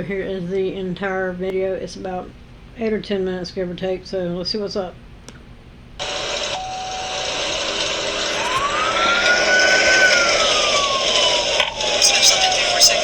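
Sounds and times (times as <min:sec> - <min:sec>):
police siren wailing: 0:06.0 - 0:13.0.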